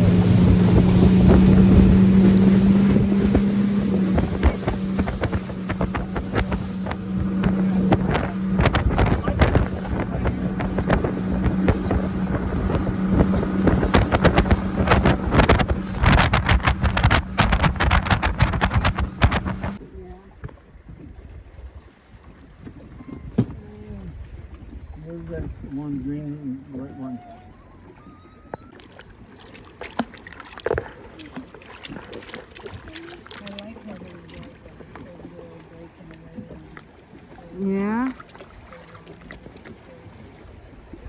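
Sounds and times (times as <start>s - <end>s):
wind buffeting microphone: 0.0s - 19.8s
motorboat engine humming: 0.0s - 41.0s.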